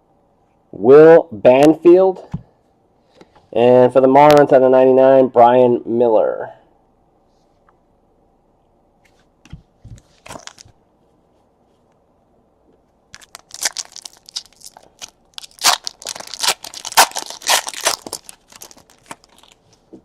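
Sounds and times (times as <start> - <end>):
wrapper tearing and crinkling: 10.3 - 10.7, 13.1 - 19.8.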